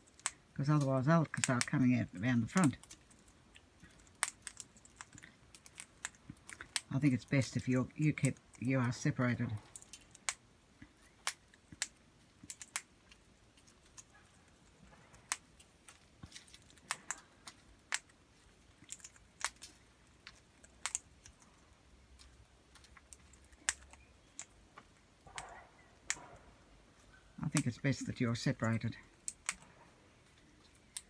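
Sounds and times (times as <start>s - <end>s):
parrot cracking seed: 2.6s - 7.0s.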